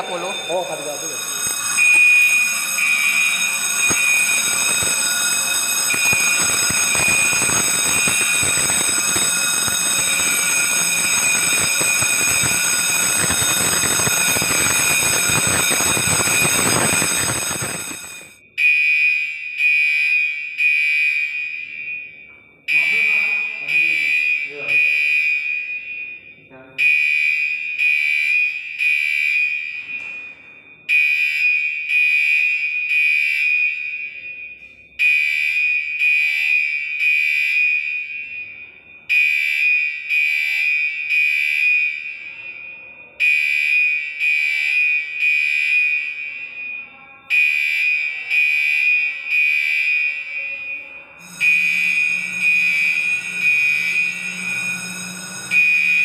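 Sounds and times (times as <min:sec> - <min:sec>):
fire alarm high-pitched electronic tone: 0:00.0 - 0:56.0
low hum: 0:51.2 - 0:56.0.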